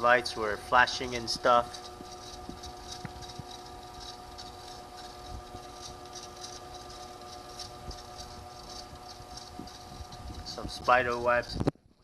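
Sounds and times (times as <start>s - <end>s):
treadmill motor whine: 0.0s - 12.0s
rhythmic squeak: 0.8s - 11.5s.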